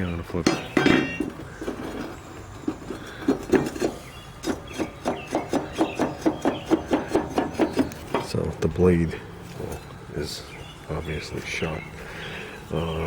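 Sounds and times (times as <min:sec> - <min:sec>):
metal blade clunking: 0:00.4 - 0:01.4.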